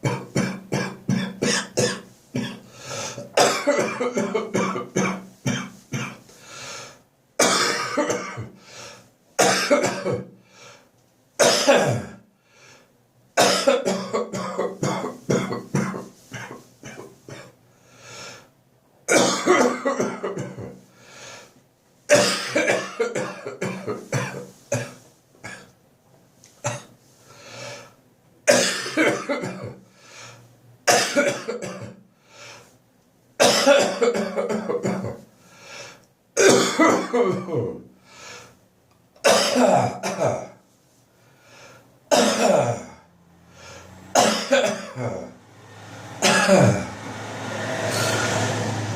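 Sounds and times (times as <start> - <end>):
chesty coughing: 0.0 - 6.2, 7.4 - 8.6, 9.4 - 10.3, 11.4 - 12.2, 13.4 - 17.5, 19.1 - 20.8, 22.1 - 25.7, 28.5 - 29.8, 30.9 - 32.0, 33.4 - 35.2, 36.4 - 37.8, 39.2 - 40.6, 42.1 - 43.0, 44.2 - 45.4, 46.2 - 46.9.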